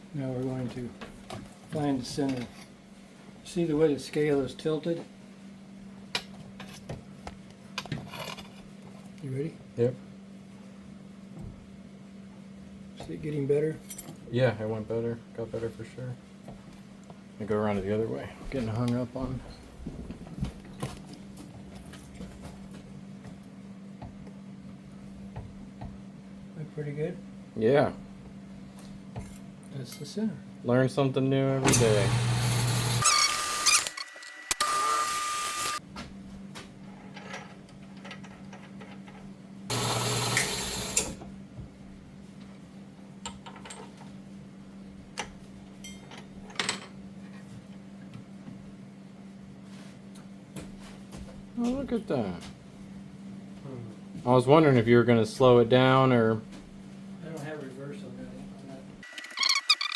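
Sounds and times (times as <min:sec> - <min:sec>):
machine motor humming: 0:31.6 - 0:35.8, 0:39.7 - 0:41.2.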